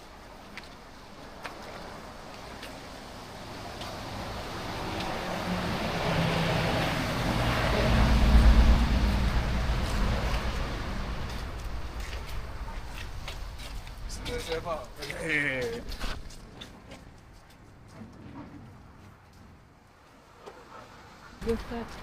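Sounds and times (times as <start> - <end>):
vehicle driving past: 3.0 - 14.8.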